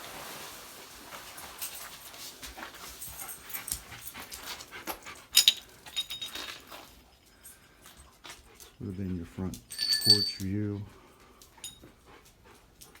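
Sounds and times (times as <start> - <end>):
dog panting: 2.4 - 5.7, 7.7 - 9.6, 10.9 - 13.0.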